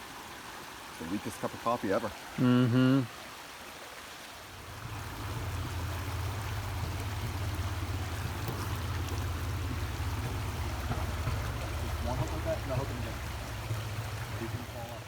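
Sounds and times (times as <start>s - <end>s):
creek water rushing: 0.0s - 15.0s
low rumble: 4.6s - 14.4s.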